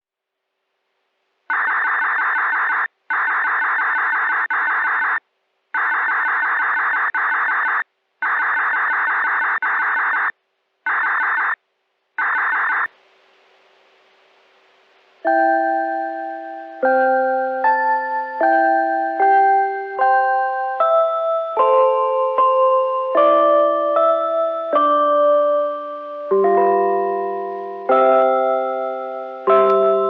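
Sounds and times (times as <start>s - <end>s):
faint hiss: 12.9s - 16.9s
low steady hum: 12.9s - 21.9s
ringing chime melody: 15.2s - 30.0s.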